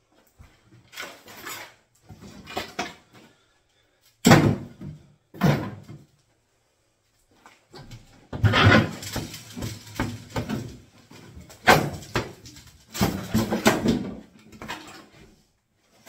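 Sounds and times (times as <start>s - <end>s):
wooden cabinets knocking and creaking: 7.8s - 15.0s.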